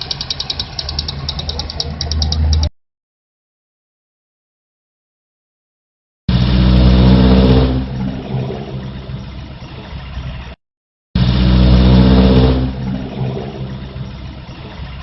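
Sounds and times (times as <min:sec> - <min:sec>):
car engine revving: 0:06.3 - 0:10.4, 0:11.2 - 0:15.0.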